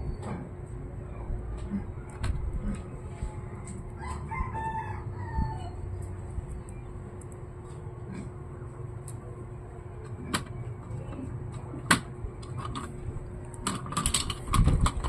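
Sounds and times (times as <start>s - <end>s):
low steady hum: 0.0s - 15.0s
laptop parts clicking: 10.0s - 15.0s.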